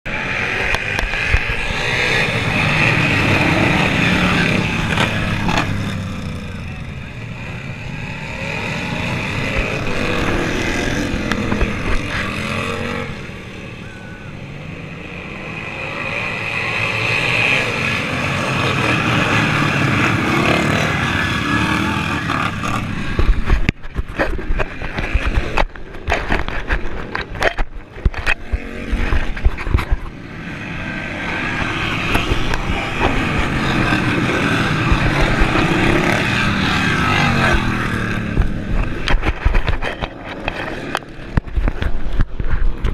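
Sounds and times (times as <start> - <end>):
racing lawn mower engines: 0.1 - 42.9.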